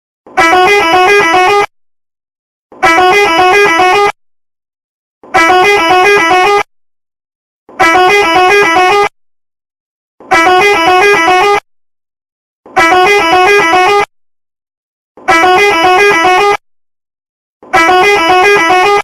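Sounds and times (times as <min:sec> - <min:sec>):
multi-tone bus horn: 0:00.3 - 0:01.7, 0:02.7 - 0:04.2, 0:05.2 - 0:06.7, 0:07.7 - 0:09.2, 0:10.2 - 0:11.7, 0:12.7 - 0:14.1, 0:15.2 - 0:16.6, 0:17.6 - 0:19.0.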